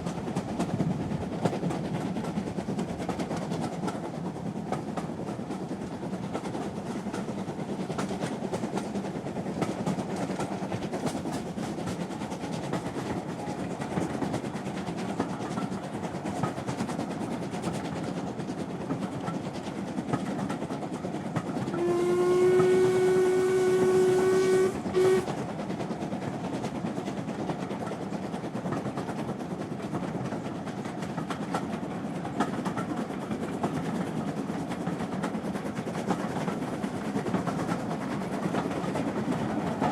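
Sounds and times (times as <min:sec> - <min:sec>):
rail clicks: 0:00.0 - 0:39.9
train rumbling: 0:00.0 - 0:39.9
train whistle: 0:21.6 - 0:25.4.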